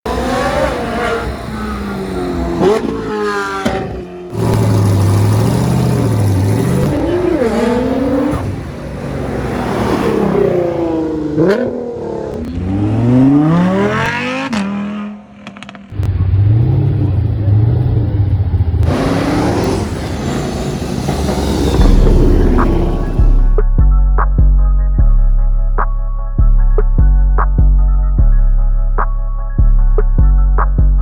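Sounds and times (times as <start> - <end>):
car engines revving: 0.0 - 23.6.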